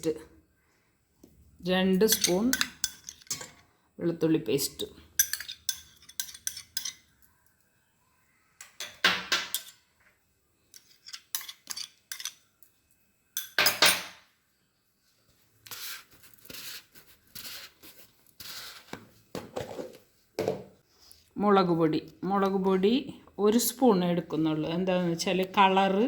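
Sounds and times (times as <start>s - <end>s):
spoon scraping bowl: 5.2s - 7.1s, 10.8s - 12.4s, 15.6s - 19.0s.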